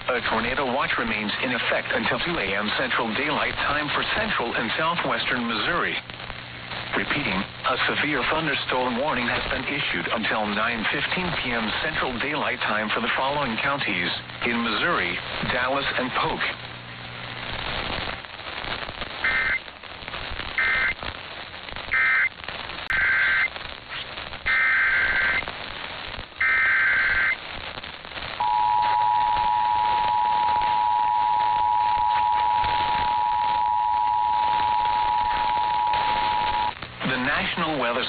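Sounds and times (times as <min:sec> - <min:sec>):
radio hiss and crackle: 0:00.0 - 0:38.0
buzzy data tone bursts: 0:17.4 - 0:19.6, 0:20.2 - 0:21.0, 0:21.9 - 0:37.3
two-tone attention signal: 0:28.4 - 0:36.7.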